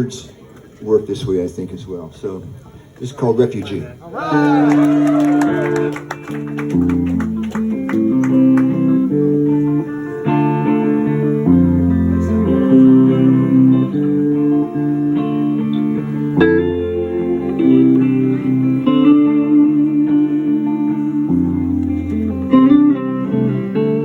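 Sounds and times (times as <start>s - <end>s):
guitar chords: 4.3s - 24.0s
live band playing slow waltz: 5.8s - 24.0s.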